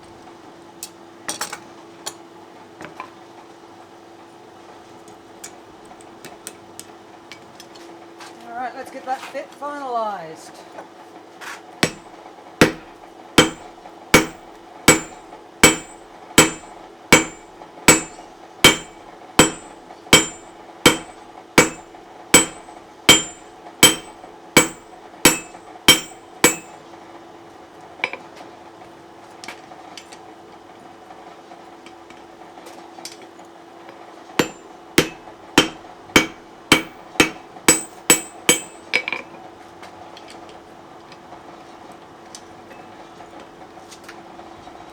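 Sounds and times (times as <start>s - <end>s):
hammer striking steel on anvil: 11.8s - 26.8s, 34.4s - 39.1s
steady low hum: 11.8s - 26.8s, 34.4s - 38.9s.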